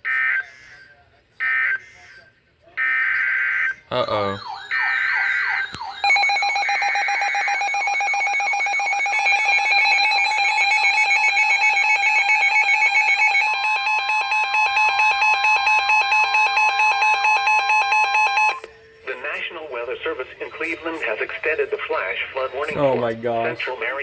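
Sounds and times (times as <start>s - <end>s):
pulsing electronic alarm tone: 3.4s - 18.6s.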